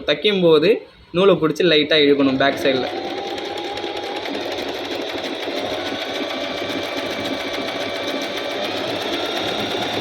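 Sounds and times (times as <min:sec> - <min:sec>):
electric sewing machine running: 0:02.2 - 0:10.0.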